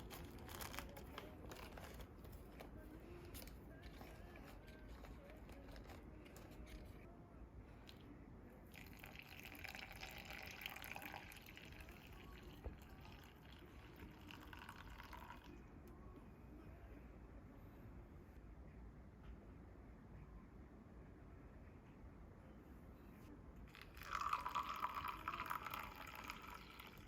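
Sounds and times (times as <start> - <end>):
water pouring in thin stream: 8.7 - 12.0, 23.7 - 27.0.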